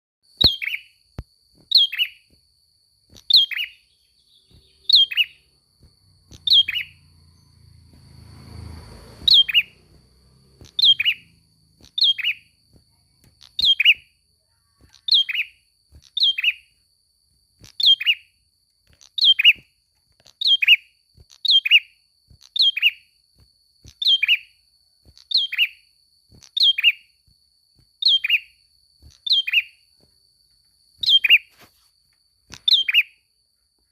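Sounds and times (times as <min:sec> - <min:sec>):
songbird chirping: 0:00.3 - 0:33.9.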